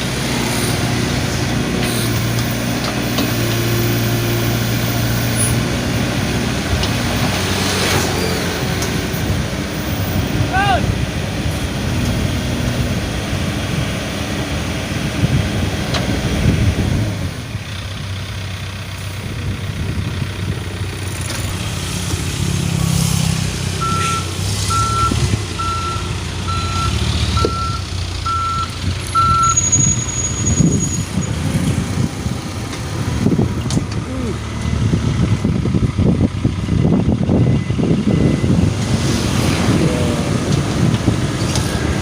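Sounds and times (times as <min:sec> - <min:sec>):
heavy diesel engines under load: 0:00.0 - 0:42.0
reversing alarm beeping: 0:23.8 - 0:31.2, 0:36.7 - 0:38.8.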